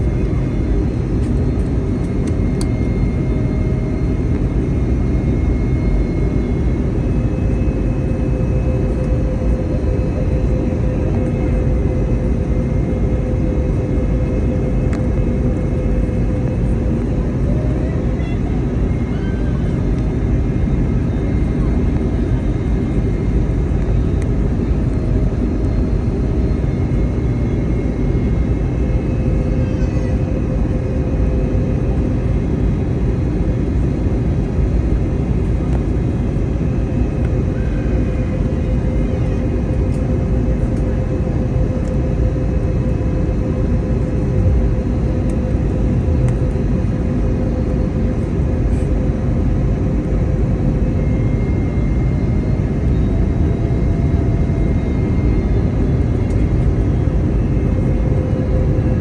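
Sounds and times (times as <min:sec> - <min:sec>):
airplane cabin rumble: 0:00.0 - 0:59.0
faint engine hum: 0:00.0 - 0:59.0.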